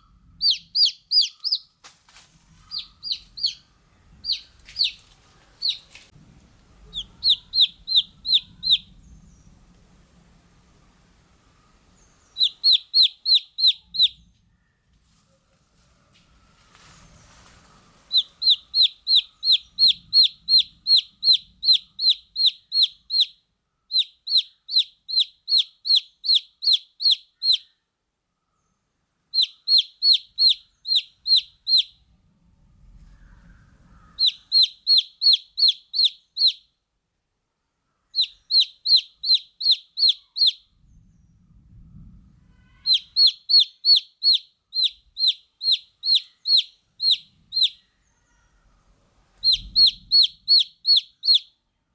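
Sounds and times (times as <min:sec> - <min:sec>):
baby chick peeping: 0:00.0 - 0:01.9, 0:02.5 - 0:09.7, 0:12.0 - 0:14.4, 0:17.3 - 0:27.7, 0:29.3 - 0:32.0, 0:33.3 - 0:36.7, 0:38.1 - 0:40.7, 0:42.4 - 0:51.6.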